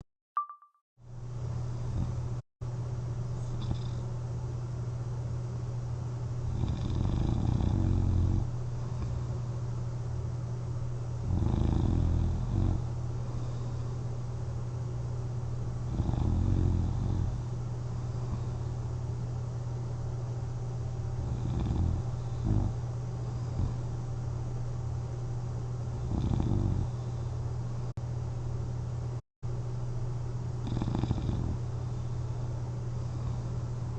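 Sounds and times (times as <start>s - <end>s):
steady low hum: 1.0s - 33.9s
person snoring: 6.4s - 9.2s, 11.2s - 13.8s, 15.9s - 18.7s, 21.2s - 23.9s, 26.0s - 27.2s, 30.6s - 31.6s.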